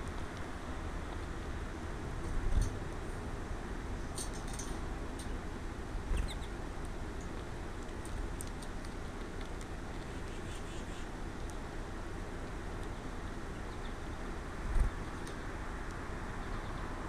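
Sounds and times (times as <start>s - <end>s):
steady background noise: 0.0s - 17.0s
small birds chirping: 6.1s - 6.6s, 7.2s - 11.7s, 12.7s - 17.0s.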